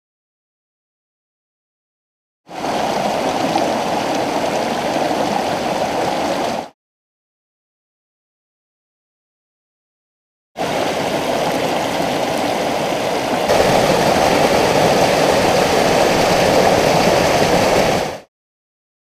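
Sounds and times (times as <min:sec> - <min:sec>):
stream water rushing: 0:02.5 - 0:06.8, 0:10.6 - 0:18.3.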